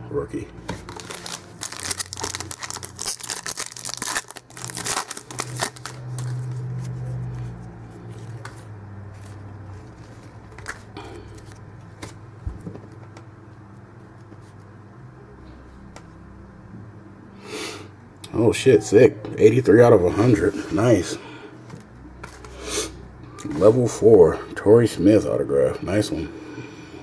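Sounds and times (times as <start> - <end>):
foil wrapper crinkling and tearing: 0.8 - 7.0.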